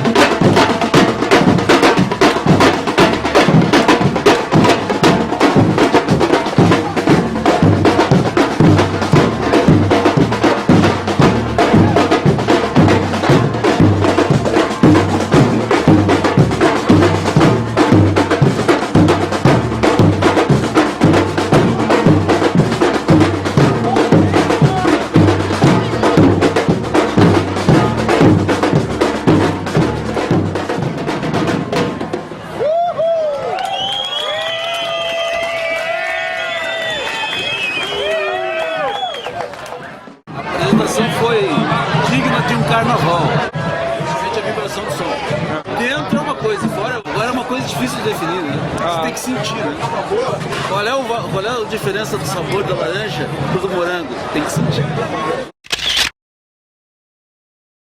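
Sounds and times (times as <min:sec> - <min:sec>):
fast crisp drum strikes: 0:00.0 - 0:32.4
repeating low drum beat: 0:00.0 - 0:32.4, 0:40.3 - 0:52.5
percussion ensemble drumming: 0:00.0 - 0:32.8, 0:40.2 - 0:55.2.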